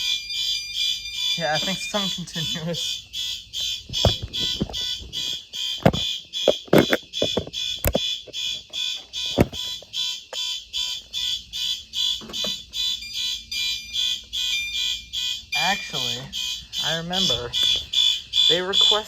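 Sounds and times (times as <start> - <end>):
fire alarm horns pulsing: 0.0 - 19.0
handling knocks: 3.9 - 9.9.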